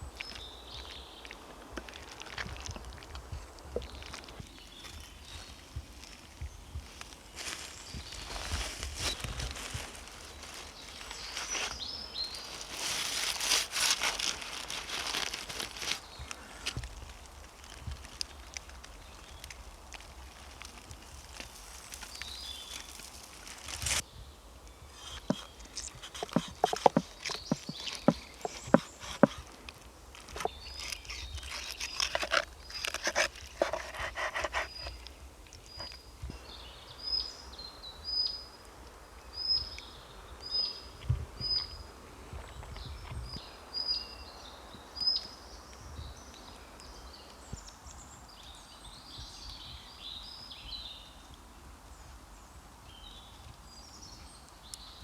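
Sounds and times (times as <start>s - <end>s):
faint bird chatter: 24.8s - 29.7s, 30.3s - 37.6s
sharp clicks and knocks: 25.2s - 29.4s.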